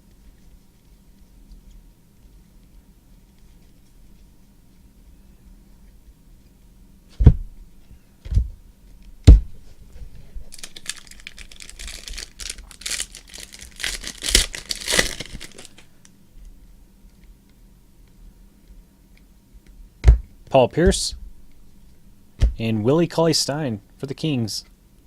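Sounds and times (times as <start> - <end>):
wrapper crinkling and tearing: 10.5 - 15.9.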